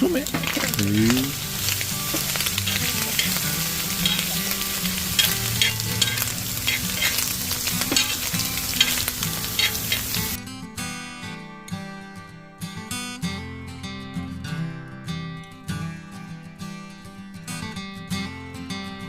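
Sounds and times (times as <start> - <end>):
food sizzling in frying pan: 0.0 - 10.4
utensil scraping pan: 0.3 - 10.3.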